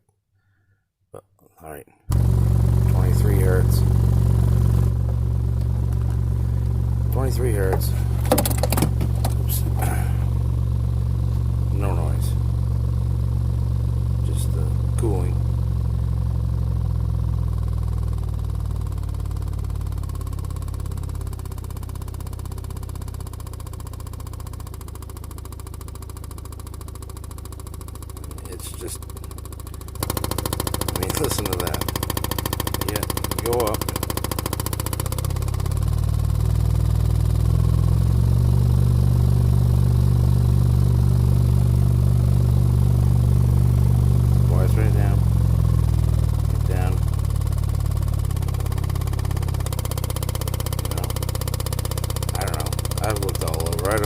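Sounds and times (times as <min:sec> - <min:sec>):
low bass test tone: 0:02.1 - 0:23.7, 0:34.6 - 0:54.0
fast clicking rattle: 0:07.2 - 0:10.1, 0:27.2 - 0:37.5, 0:45.8 - 0:54.0
rapid buzzing click: 0:29.2 - 0:35.4.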